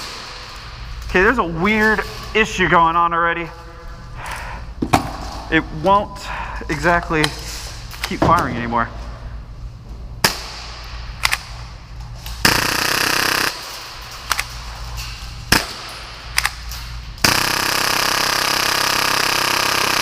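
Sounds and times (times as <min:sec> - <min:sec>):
airsoft pistol firing: 0:12.4 - 0:13.8, 0:15.5 - 0:16.5, 0:17.2 - 0:20.0.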